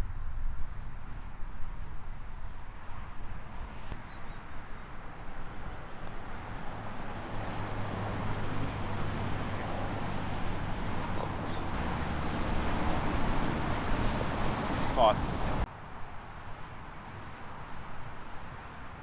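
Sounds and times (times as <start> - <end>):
golf cart motor humming: 7.7 - 15.6.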